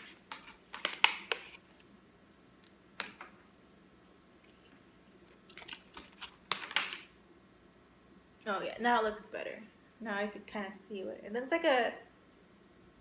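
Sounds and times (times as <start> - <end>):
packaging handling clicks and rustles: 0.0 - 1.9, 5.3 - 7.1.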